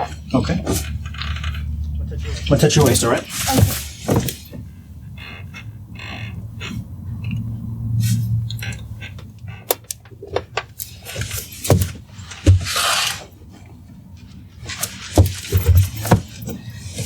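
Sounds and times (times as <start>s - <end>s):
heavy thumps: 2.5s - 4.7s, 9.7s - 12.9s, 14.7s - 16.6s
clicks and knocks: 2.8s - 4.6s.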